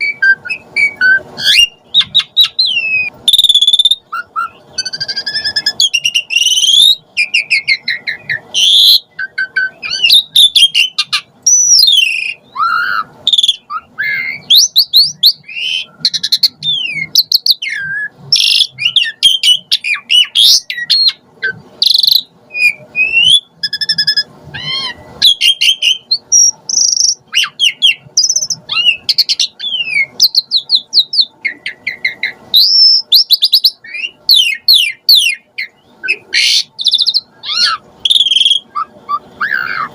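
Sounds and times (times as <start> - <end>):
starling singing varied song: 0.0 - 39.9.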